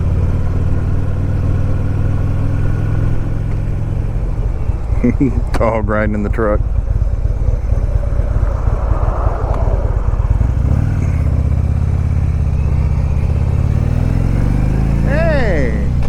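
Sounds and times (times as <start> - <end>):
motorcycle engine running: 0.0 - 16.0
wind rushing over microphone: 3.1 - 15.0.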